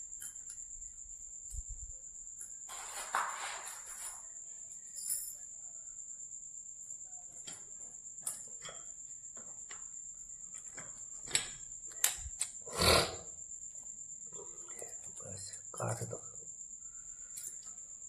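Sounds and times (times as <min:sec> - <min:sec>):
high-pitched cricket-like trill: 0:00.0 - 0:18.0
scraping rustle: 0:02.6 - 0:04.4.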